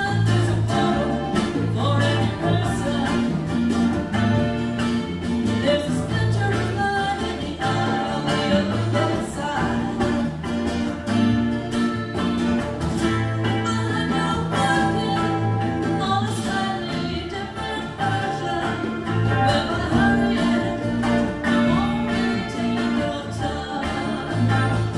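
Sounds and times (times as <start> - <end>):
person singing: 0.0 - 10.4, 13.4 - 24.9
country-rock band playing: 0.0 - 24.9.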